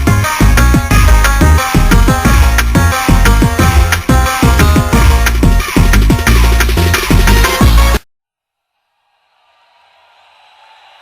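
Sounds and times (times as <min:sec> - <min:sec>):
electronic dance music: 0:00.0 - 0:08.0.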